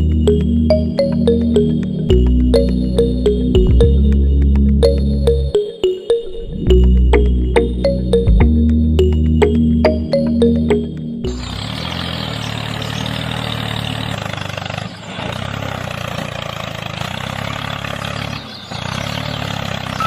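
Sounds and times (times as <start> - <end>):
tractor engine idling: 6.7 - 20.0.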